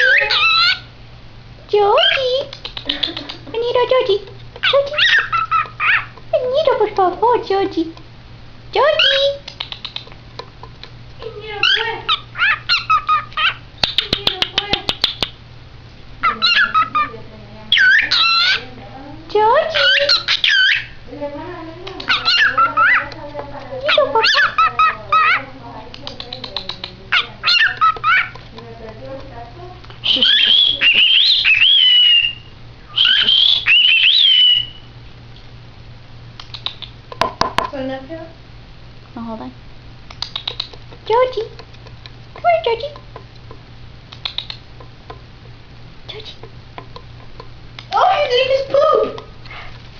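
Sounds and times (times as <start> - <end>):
cockatiel whistling: 0.0 - 0.9, 5.0 - 6.1, 11.6 - 14.0, 16.2 - 17.1, 17.7 - 18.6, 19.7 - 21.0, 22.0 - 23.1, 26.2 - 28.4, 30.0 - 34.9
sharp bird clicks: 2.4 - 3.5, 9.0 - 11.0, 11.6 - 15.4, 21.8 - 32.4, 33.0 - 34.8, 36.4 - 37.6, 40.1 - 45.2
cockatiel warbled whistles: 30.0 - 34.9.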